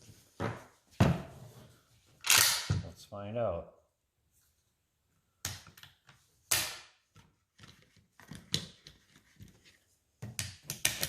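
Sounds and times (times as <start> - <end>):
shotgun clicks and metallic rattles: 2.2 - 2.7.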